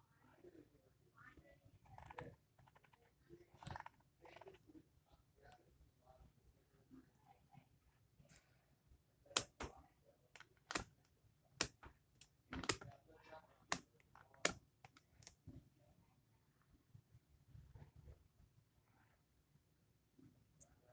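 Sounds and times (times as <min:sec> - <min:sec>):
small hard objects clicking: 0:10.4 - 0:10.9.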